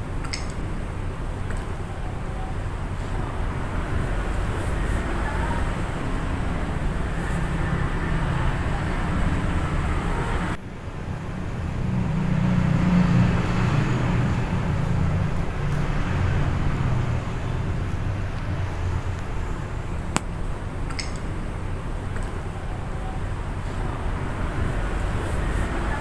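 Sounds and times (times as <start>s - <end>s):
sharp click: 0.2s - 0.6s, 20.9s - 21.3s.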